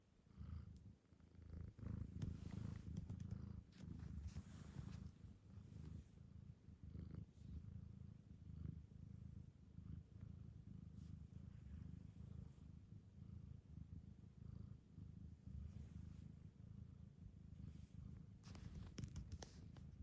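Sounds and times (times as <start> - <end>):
cat purring: 0.3 - 20.0
soft rustles: 2.0 - 5.4, 18.4 - 20.0.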